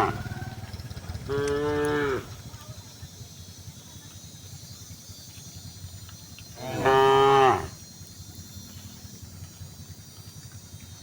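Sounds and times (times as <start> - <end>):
cow mooing: 1.3 - 2.3, 6.6 - 7.8.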